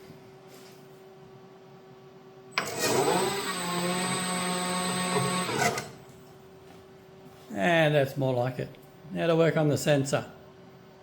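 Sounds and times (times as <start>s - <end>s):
lathe spindle motor whine: 2.6s - 5.9s.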